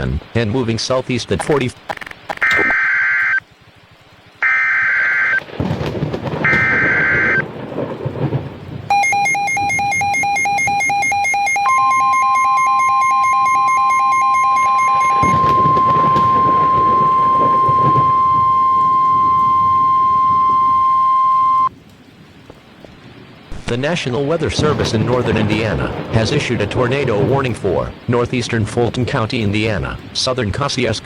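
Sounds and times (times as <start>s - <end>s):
thunder rumbling: 1.4s - 31.0s
rapidly pulsing electronic alarm: 1.9s - 3.4s, 4.4s - 5.4s, 6.4s - 7.4s, 8.9s - 21.7s
screeching digital data tones: 1.9s - 3.4s, 4.4s - 5.4s, 6.5s - 7.4s, 8.9s - 21.7s
steady warning alarm tone: 2.4s - 3.4s, 4.4s - 5.4s, 6.4s - 7.4s, 8.9s - 21.7s.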